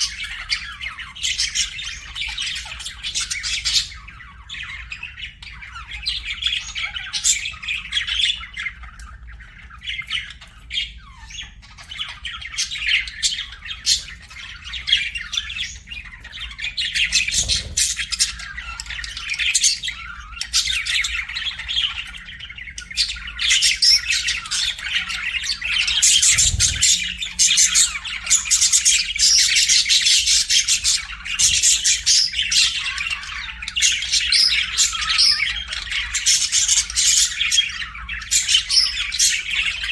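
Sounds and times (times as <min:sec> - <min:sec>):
budgerigars chirping: 0:00.0 - 0:39.9.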